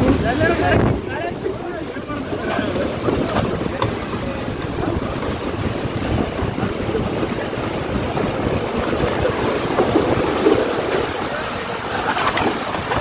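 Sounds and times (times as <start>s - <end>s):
heavy rain: 0.0s - 13.0s
strong wind: 0.0s - 13.0s
wind buffeting microphone: 0.0s - 13.0s.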